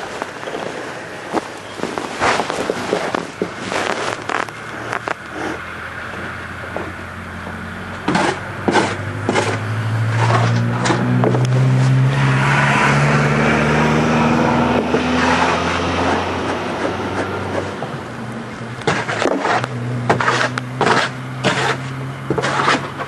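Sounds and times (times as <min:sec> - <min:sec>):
sharp knocks and clatters: 0:06.1 - 0:09.6.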